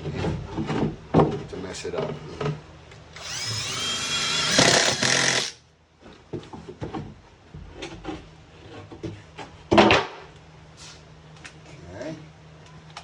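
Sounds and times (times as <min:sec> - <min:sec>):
power drill driving screw into wood: 0:03.2 - 0:05.6.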